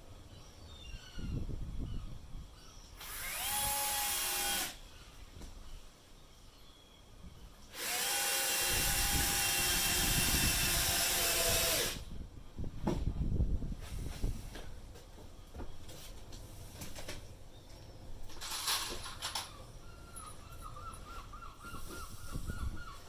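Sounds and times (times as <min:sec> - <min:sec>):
power tool motor whining: 0:03.0 - 0:04.8, 0:07.7 - 0:12.1.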